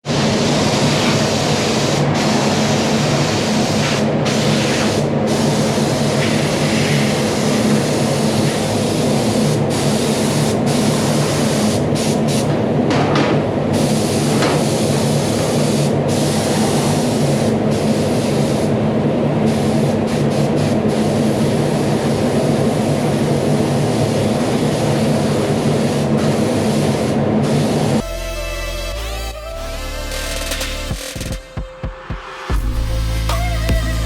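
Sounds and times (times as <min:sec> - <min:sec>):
machine hissing and humming: 0:00.0 - 0:31.4
music: 0:28.0 - 0:34.0.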